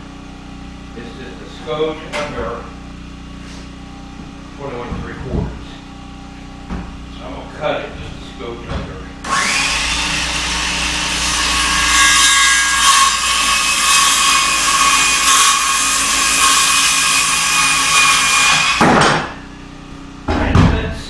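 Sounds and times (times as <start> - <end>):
electric saw cutting wood: 9.2 - 19.5.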